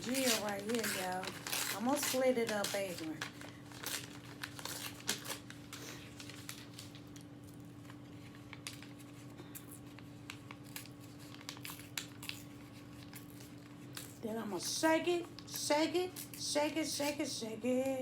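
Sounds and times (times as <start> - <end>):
paper being folded and torn: 0.0 - 7.1, 8.2 - 14.2.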